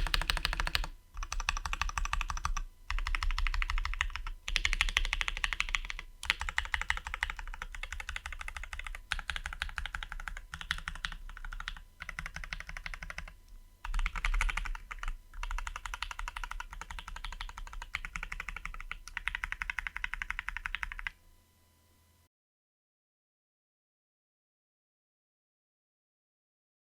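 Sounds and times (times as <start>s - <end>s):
mechanical keyboard typing: 0.0s - 21.2s.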